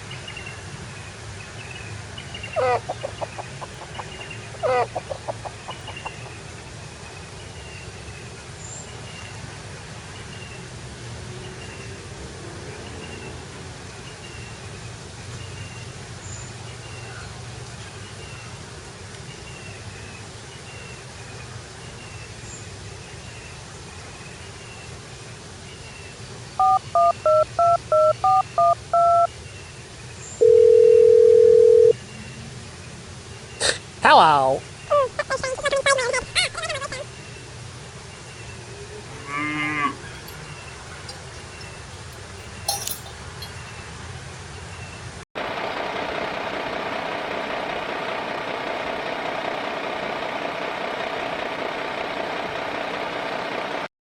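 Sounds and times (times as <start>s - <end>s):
chicken clucking: 2.6s - 6.4s
telephone dialling beeps: 26.6s - 29.3s, 30.4s - 31.9s
steady telephone tone: 30.4s - 32.0s.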